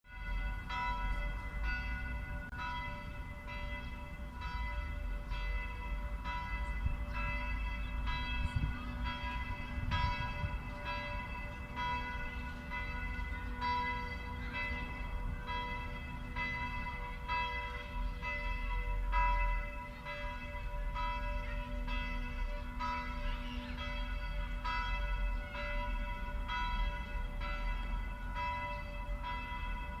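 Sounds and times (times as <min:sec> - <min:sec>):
church bells ringing: 0:00.0 - 0:30.0.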